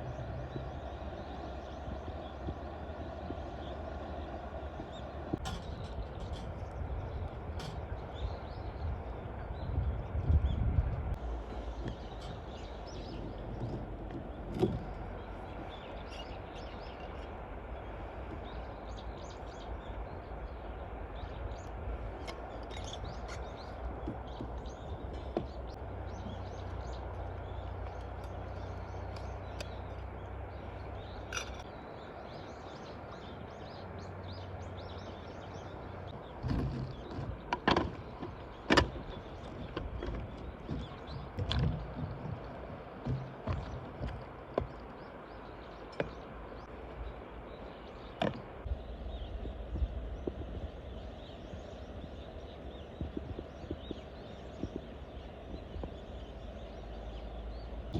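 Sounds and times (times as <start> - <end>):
low steady rumble: 0.0 - 57.9
small birds chirping: 0.0 - 57.9
sharp knocks and clatters: 36.4 - 45.0.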